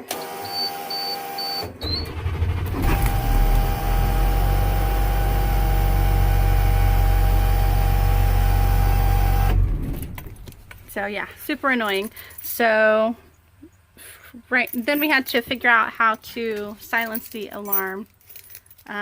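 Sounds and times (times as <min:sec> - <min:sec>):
bus door alarm buzzing: 0:00.2 - 0:09.8
engine cranking: 0:01.8 - 0:10.8
bus engine running: 0:02.1 - 0:10.7.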